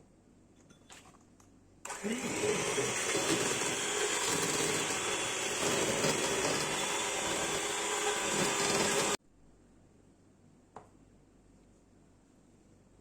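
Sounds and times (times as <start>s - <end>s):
kitchen appliance motor running: 1.9s - 9.2s.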